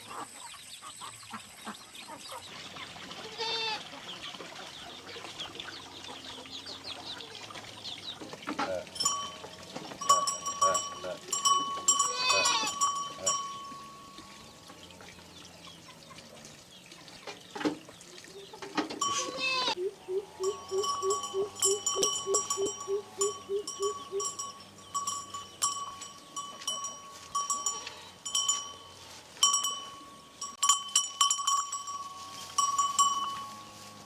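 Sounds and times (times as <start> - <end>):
goats bleating: 3.2 - 4.0, 10.4 - 15.9, 19.0 - 19.8
metal neck bell clinking: 8.9 - 14.9, 20.4 - 33.8.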